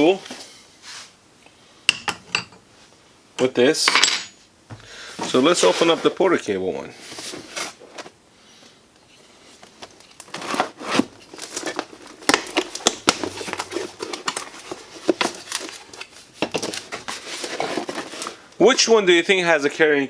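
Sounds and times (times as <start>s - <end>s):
cardboard crinkling and tearing: 9.7s - 18.4s.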